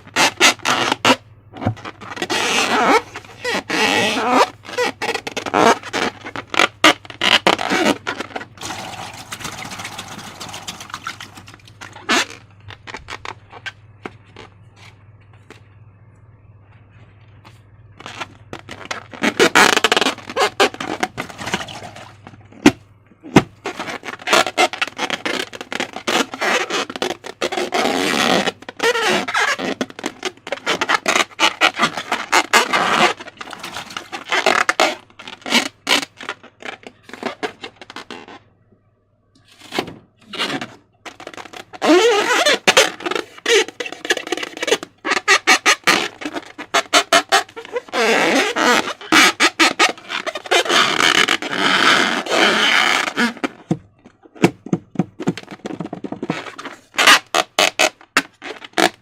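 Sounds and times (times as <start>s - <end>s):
slime squelching: 1.8s - 13.6s, 18.0s - 24.4s
air bubbles popping: 8.6s - 11.4s.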